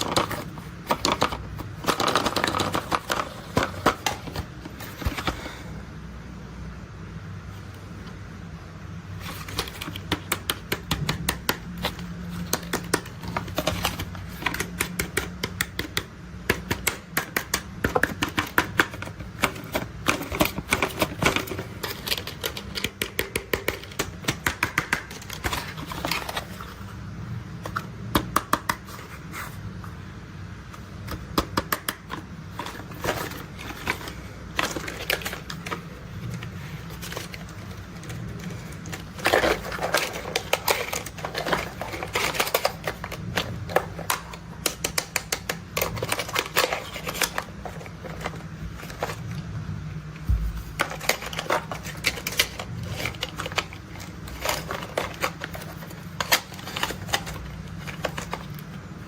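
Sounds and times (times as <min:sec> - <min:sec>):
taps and clicks on toy vehicles: 0:09.9 - 0:21.3, 0:28.1 - 0:28.9, 0:31.3 - 0:32.2.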